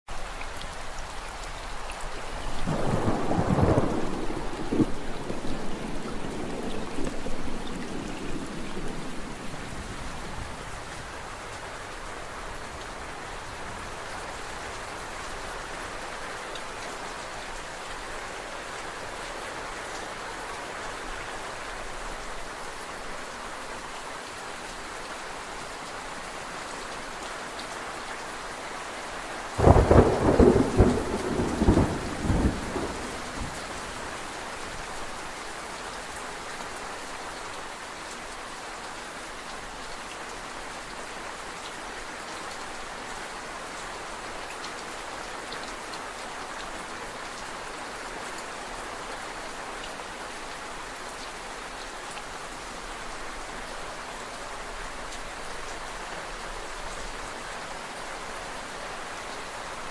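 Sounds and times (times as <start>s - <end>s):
steady rain: 0.1s - 59.9s
thunder rumbling: 2.6s - 10.9s, 29.6s - 34.2s.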